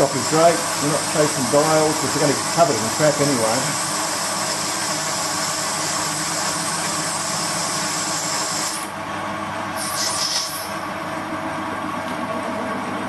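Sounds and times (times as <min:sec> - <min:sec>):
high hissing metal cutting: 0:00.0 - 0:08.9, 0:09.8 - 0:10.8
lathe machine hum: 0:00.0 - 0:13.0.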